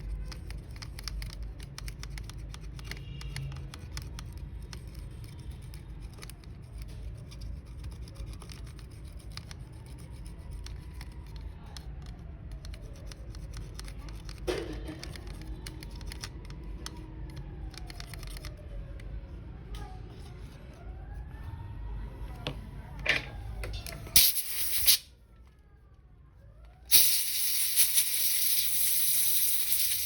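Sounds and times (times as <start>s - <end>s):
small plastic clicks: 0.1s - 19.1s.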